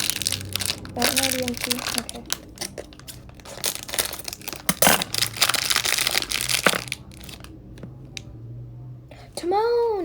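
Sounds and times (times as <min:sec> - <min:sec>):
packaging crinkling and tearing: 0:00.0 - 0:07.6.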